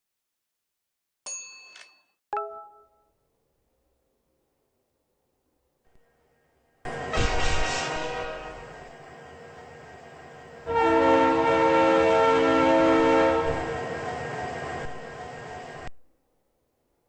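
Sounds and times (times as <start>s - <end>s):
train horn chord: 7.0s - 8.8s, 10.6s - 13.7s.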